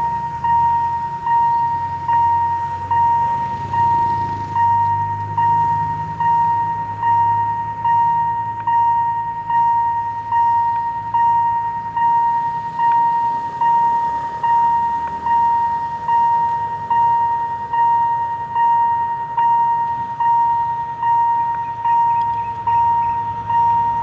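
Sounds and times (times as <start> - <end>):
level crossing bell ringing: 0.0 - 24.0.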